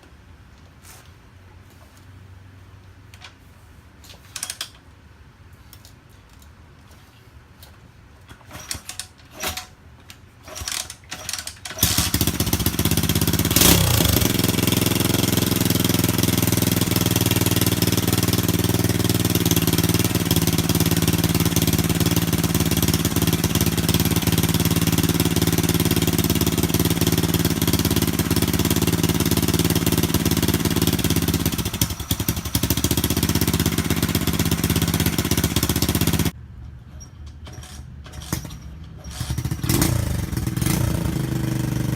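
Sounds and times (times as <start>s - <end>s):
minibike engine idling: 10.4s - 41.9s.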